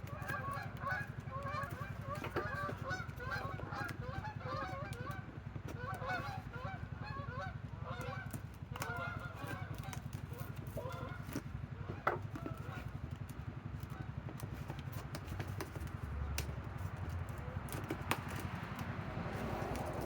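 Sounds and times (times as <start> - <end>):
faint goose honks: 0.1 - 11.2.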